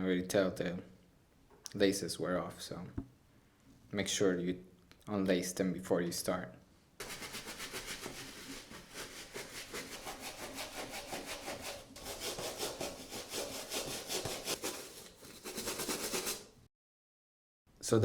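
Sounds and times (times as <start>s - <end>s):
brush scrubbing a sneaker: 7.0s - 16.6s.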